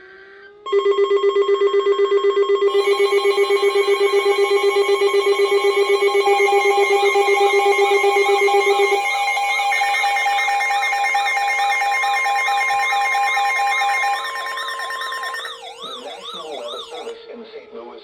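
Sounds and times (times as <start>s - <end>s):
pulsing low alert tone: 2.7s - 17.1s
steady alert tones: 2.7s - 17.2s
warbling alert tone: 2.7s - 17.2s.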